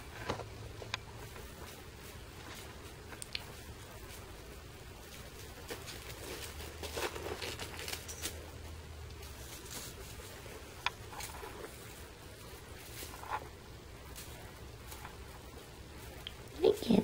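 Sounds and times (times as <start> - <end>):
faint rustling and crinkling: 0.0 - 17.0
small sharp clicks: 3.1 - 3.5.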